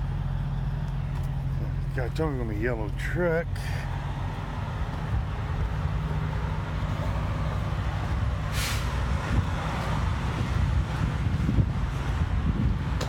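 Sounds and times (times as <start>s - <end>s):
diesel engine idling: 0.0s - 13.0s
short hiss: 8.5s - 8.9s.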